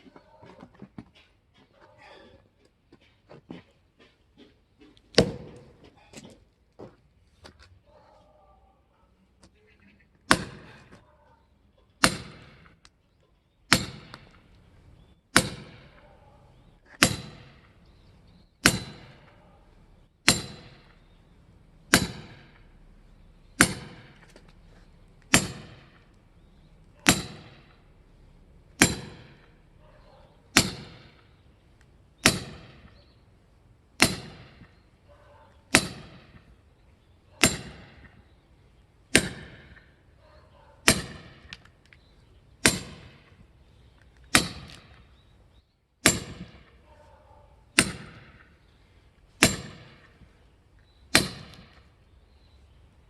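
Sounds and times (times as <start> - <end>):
firewood splitting strikes: 5.1 - 5.8, 10.2 - 11.0, 12.0 - 12.9, 13.7 - 14.6, 15.3 - 16.0, 16.8 - 29.8, 30.4 - 33.1, 34.0 - 34.8, 35.7 - 36.6, 37.4 - 38.3, 39.1 - 39.9, 40.8 - 41.7, 42.6 - 43.4, 44.2 - 45.2, 46.0 - 46.7, 47.8 - 48.6, 49.4 - 50.2, 51.1 - 51.9.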